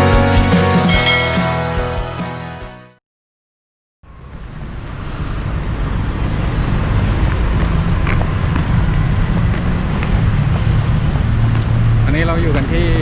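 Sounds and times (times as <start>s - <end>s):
road traffic rumble: 4.0s - 13.0s.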